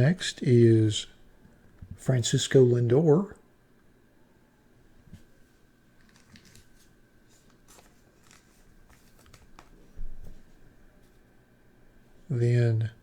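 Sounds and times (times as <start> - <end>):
trading cards scraping: 6.0 - 9.9.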